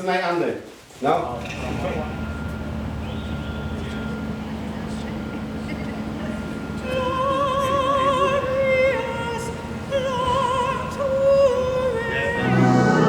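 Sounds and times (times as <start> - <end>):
operatic voice singing: 7.3 - 13.0
musical accompaniment: 12.4 - 13.0.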